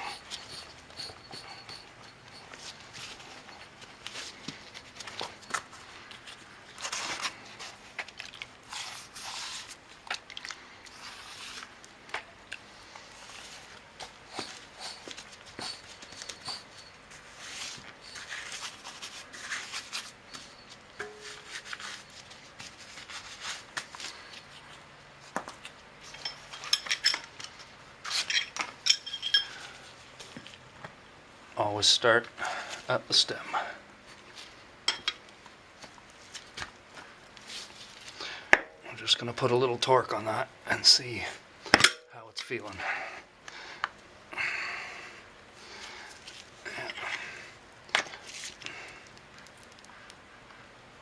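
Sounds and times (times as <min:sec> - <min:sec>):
metal tools clinking on rim: 0:26.0 - 0:29.7.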